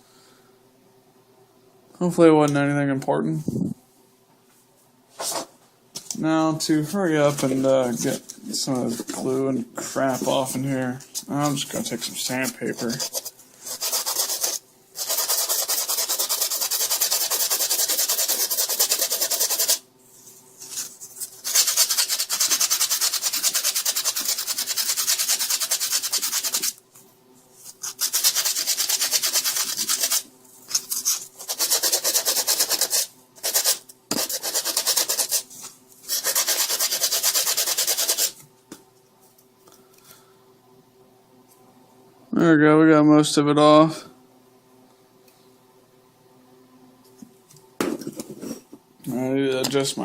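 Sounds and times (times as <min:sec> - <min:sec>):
sandpaper rasping on plastic: 0:12.3 - 0:19.8, 0:20.7 - 0:26.8, 0:27.8 - 0:38.4.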